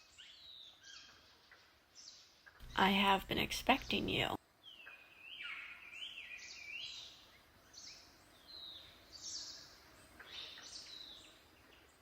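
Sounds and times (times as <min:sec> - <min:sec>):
faint steady hiss: 0:00.0 - 0:12.0
birds chirping and whistling: 0:04.6 - 0:11.9.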